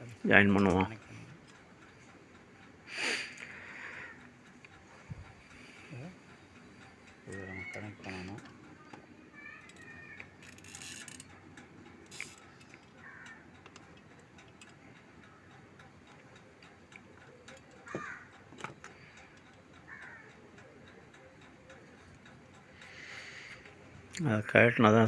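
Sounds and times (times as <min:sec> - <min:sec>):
clicks and taps of tools: 0:12.1 - 0:14.8, 0:17.0 - 0:20.1.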